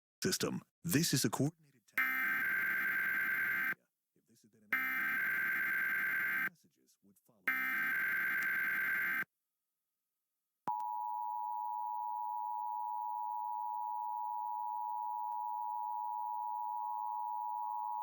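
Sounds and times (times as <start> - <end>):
two-tone alert alarm: 2.0 - 3.8, 4.8 - 6.5, 7.5 - 9.2, 13.0 - 18.0.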